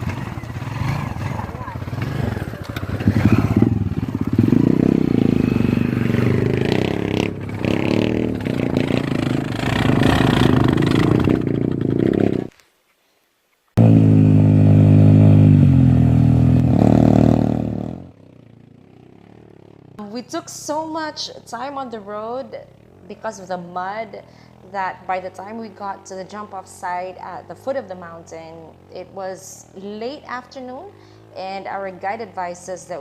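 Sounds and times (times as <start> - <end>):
engine clatter: 0.0 - 12.4
vehicle engine revving: 0.0 - 12.5, 13.8 - 18.2.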